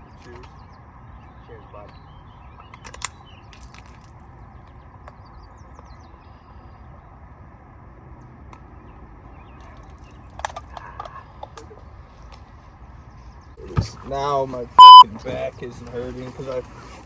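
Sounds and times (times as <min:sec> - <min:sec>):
low outdoor background noise: 0:00.0 - 0:17.0
faint bird chirps: 0:14.8 - 0:15.0.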